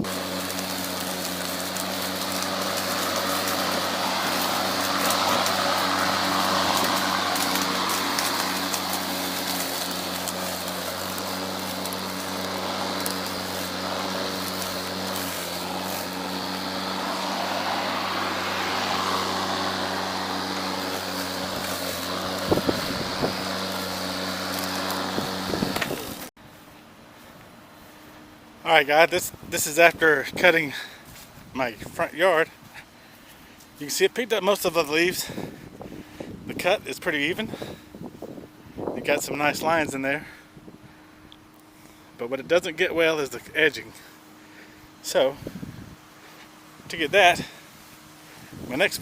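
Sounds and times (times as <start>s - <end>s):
electric lawn mower cutting grass: 0.0s - 49.0s.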